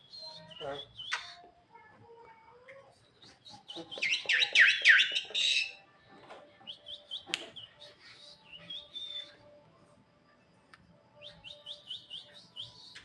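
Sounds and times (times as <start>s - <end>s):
starling whistling and chirping: 0.0s - 1.4s, 3.2s - 5.8s, 6.7s - 9.4s, 11.2s - 13.0s.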